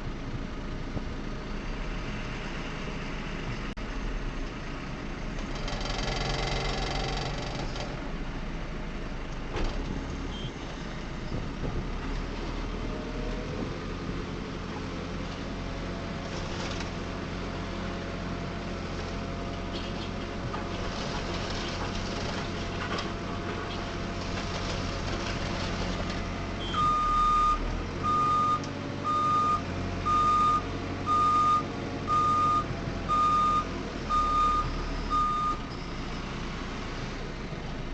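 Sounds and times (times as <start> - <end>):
diesel engine running: 0.0 - 37.9
reversing alarm beeping: 26.6 - 36.0.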